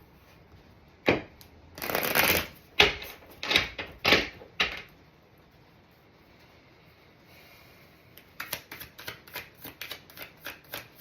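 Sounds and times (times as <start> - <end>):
cards being shuffled by hand: 1.8 - 2.6, 8.2 - 11.0.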